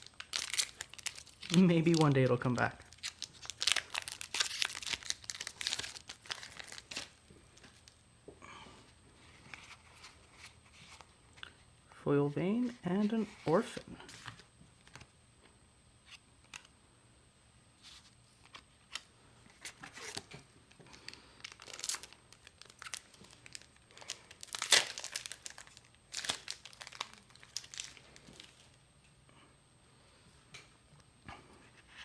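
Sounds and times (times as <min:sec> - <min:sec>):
plastic wrappers crinkling and tearing: 0:00.0 - 0:08.0, 0:20.9 - 0:28.7.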